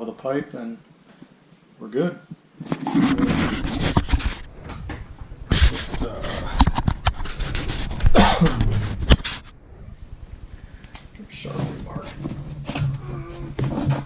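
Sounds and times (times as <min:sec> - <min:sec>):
rustling and knocks of handling: 0:02.3 - 0:09.6, 0:10.2 - 0:14.0.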